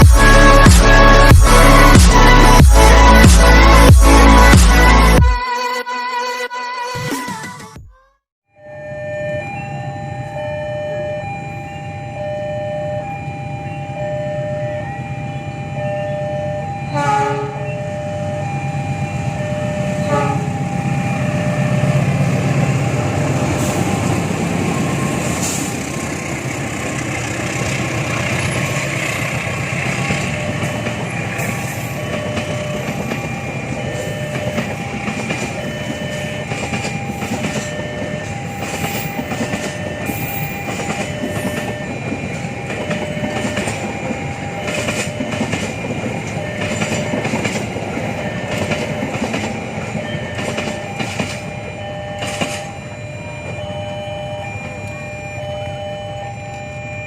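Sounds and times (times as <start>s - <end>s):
train rumbling past: 16.8s - 57.0s
train horn blasts: 16.9s - 17.8s, 20.0s - 20.7s
wheels clacking over rail joints: 22.5s - 53.6s.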